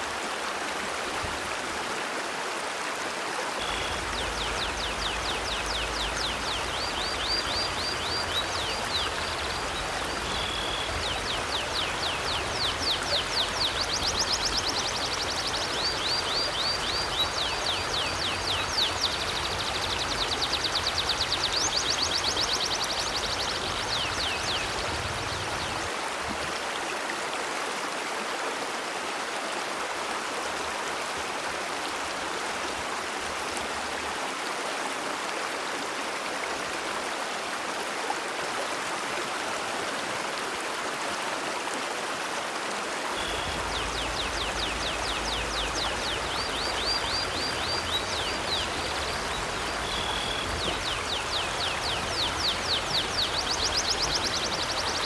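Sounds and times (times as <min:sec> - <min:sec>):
river water flowing: 0:00.0 - 0:55.0
bird chirping: 0:43.2 - 0:55.0.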